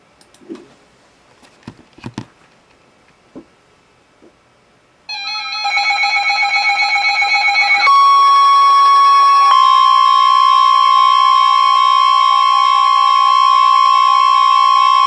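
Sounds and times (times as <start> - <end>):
steady alarm tone: 5.1 - 15.0.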